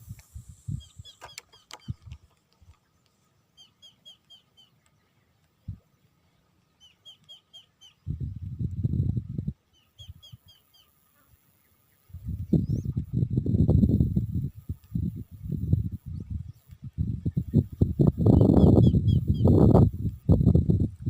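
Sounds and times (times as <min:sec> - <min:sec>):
bird chirping: 0:00.7 - 0:08.3, 0:09.7 - 0:11.0, 0:11.6 - 0:13.4, 0:16.0 - 0:19.8.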